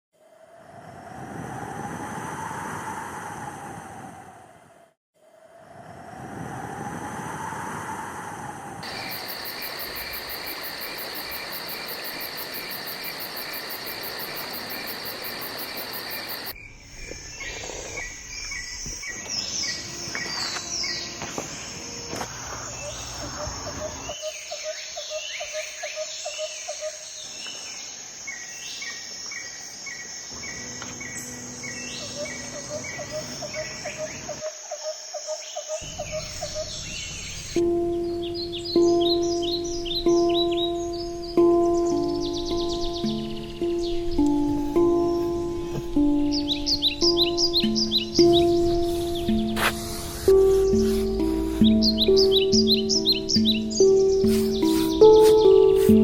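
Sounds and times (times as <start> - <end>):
insects trilling: 8.8 - 56.0
birds chirping and whistling: 16.2 - 27.6, 29.9 - 34.4, 35.5 - 56.0.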